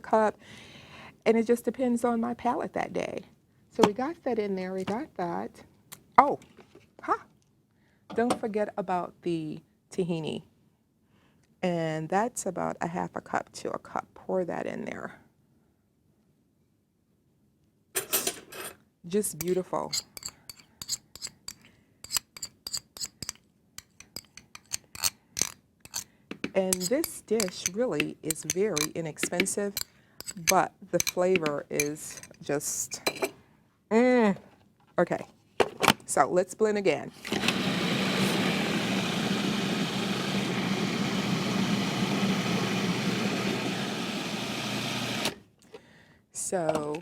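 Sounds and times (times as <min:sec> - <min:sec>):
kitchen utensil clicking and scraping: 0:19.4 - 0:32.4
electric blender running: 0:37.3 - 0:45.4.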